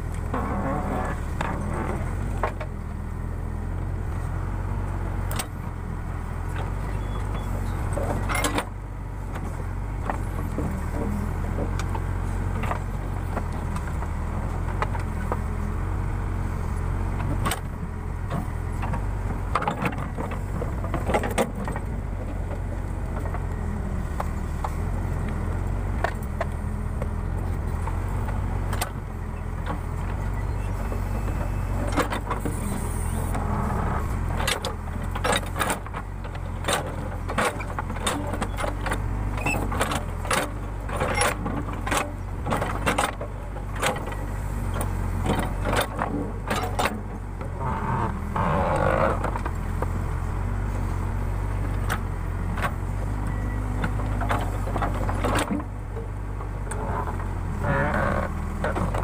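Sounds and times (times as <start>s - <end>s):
diesel engine running: 0.0s - 59.0s
metallic clanks of digger bucket: 7.0s - 8.8s, 34.3s - 48.1s, 52.6s - 59.0s.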